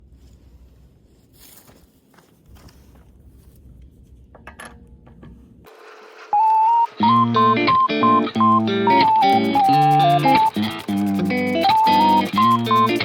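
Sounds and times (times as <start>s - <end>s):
faint clicks and rustles: 0.1s - 5.6s
held guitar note: 6.4s - 13.0s.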